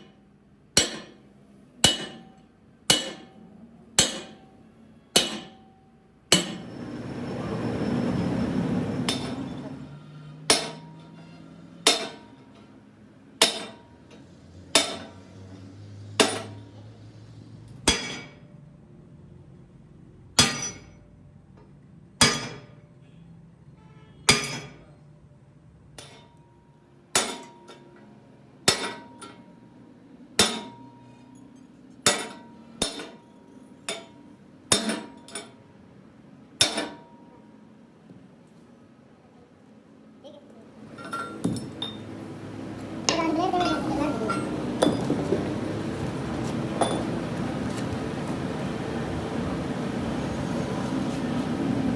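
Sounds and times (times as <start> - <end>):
hammer striking steel: 0.8 - 6.8, 8.2 - 12.8, 13.4 - 16.9, 17.8 - 18.4, 20.4 - 21.0, 22.2 - 22.8, 24.3 - 24.9, 26.0 - 26.4, 27.1 - 29.7, 30.3 - 35.7, 36.6 - 37.6, 40.9 - 42.5, 43.1 - 45.3, 46.3 - 48.6.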